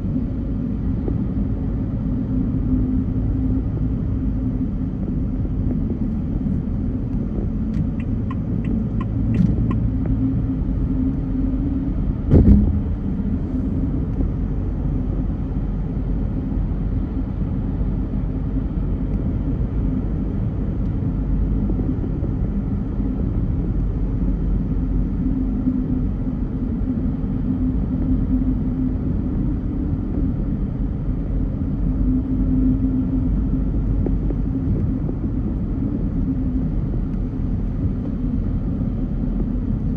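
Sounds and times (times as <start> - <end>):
car engine and road rumble: 0.0 - 39.9
thump: 12.3 - 12.9.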